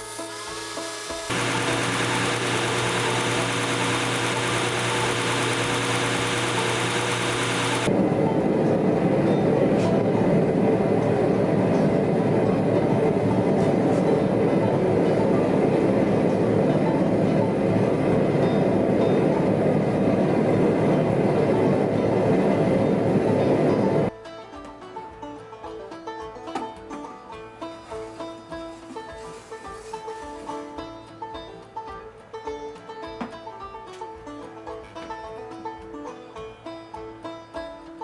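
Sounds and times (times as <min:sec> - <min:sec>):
power tool running: 0:00.0 - 0:07.9.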